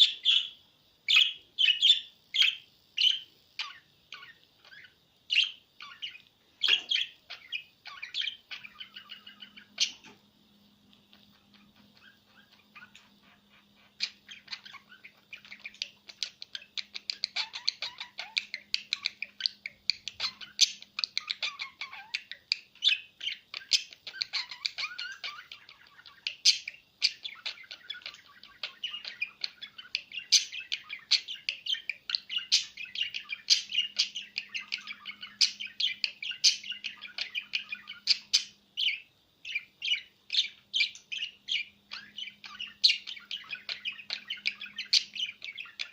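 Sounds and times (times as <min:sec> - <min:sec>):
small bird chattering: 0:00.0 - 0:45.9.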